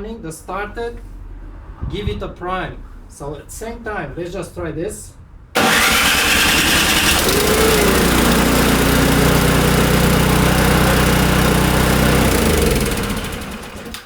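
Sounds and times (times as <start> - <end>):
electric starter cranking: 5.6 - 14.0
small engine running: 5.6 - 14.0.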